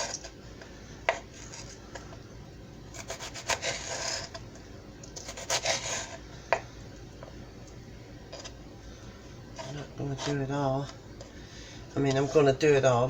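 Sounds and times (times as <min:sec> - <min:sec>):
knife slicing on cutting board: 0:03.0 - 0:04.4, 0:05.2 - 0:06.2.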